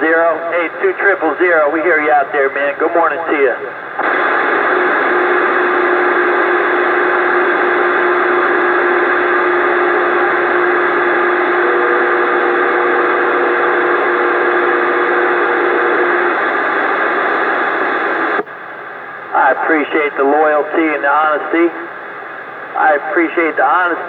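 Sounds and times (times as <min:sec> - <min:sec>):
radio static hiss: 0:00.0 - 0:24.0.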